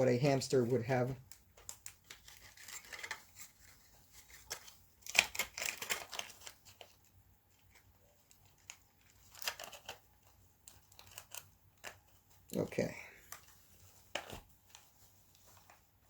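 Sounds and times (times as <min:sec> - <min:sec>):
plastic toy parts rustling and clicking: 0:01.2 - 0:12.6.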